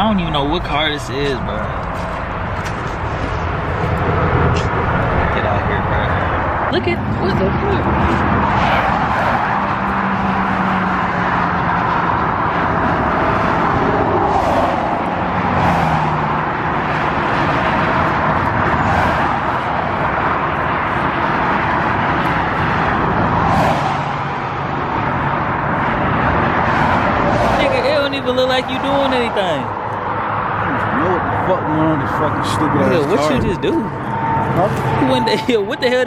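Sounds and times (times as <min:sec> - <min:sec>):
motor vehicle noise: 0:00.0 - 0:36.0.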